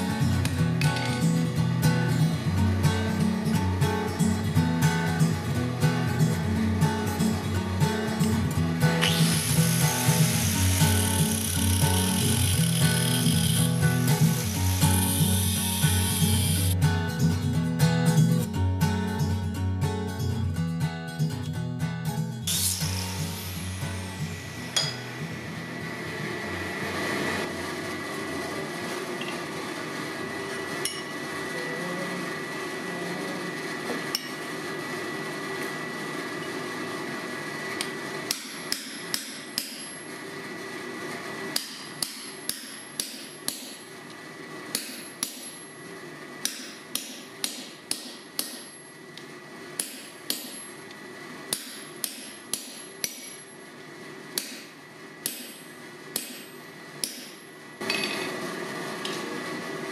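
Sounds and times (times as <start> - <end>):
hammer striking steel on anvil: 24.7 - 25.2, 30.8 - 31.2, 34.2 - 34.4, 37.8 - 40.2, 41.6 - 44.0, 44.7 - 45.8, 46.4 - 49.0, 49.8 - 50.9, 51.5 - 53.6, 54.4 - 58.4.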